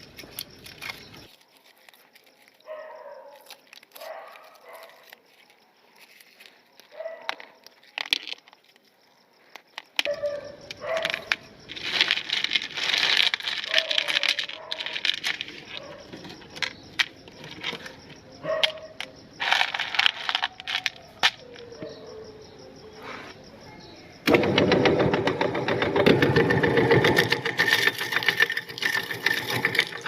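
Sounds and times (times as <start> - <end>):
meat grinder crunching: 11.1 - 16.2, 24.3 - 30.0.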